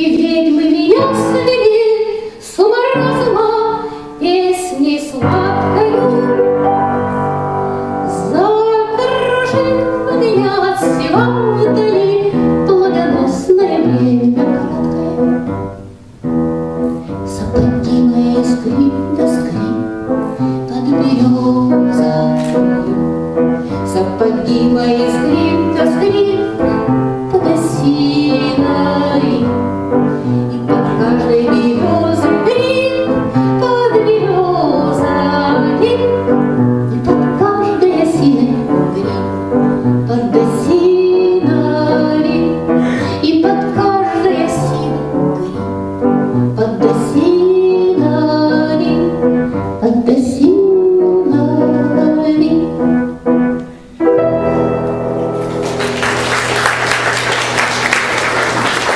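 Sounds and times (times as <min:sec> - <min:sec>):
woman singing: 0:00.0 - 0:06.7, 0:08.0 - 0:15.6, 0:17.3 - 0:45.7, 0:46.3 - 0:53.0
piano accompaniment: 0:00.0 - 0:58.9.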